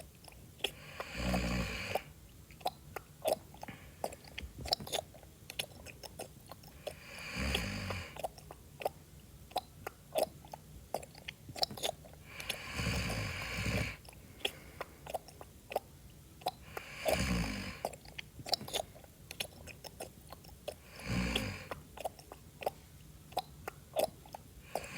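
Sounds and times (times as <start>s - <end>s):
loud chewing: 0.2s - 24.9s
snoring with low rattle: 0.8s - 2.1s, 6.8s - 8.3s, 12.3s - 14.0s, 16.8s - 17.9s, 20.9s - 21.8s, 24.7s - 24.9s.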